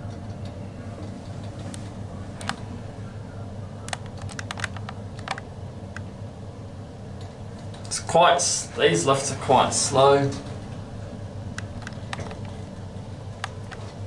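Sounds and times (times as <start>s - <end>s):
lift low hum: 0.0s - 14.0s
sharp clicks and ticks: 3.9s - 6.1s, 13.4s - 13.9s.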